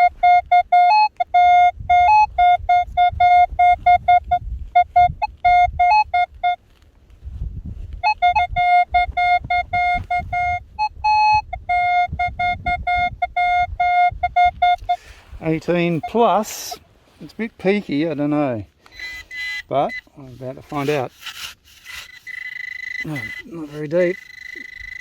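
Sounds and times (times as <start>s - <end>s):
metal detector beeps: 0.0s - 6.6s, 8.0s - 16.8s, 18.8s - 25.0s.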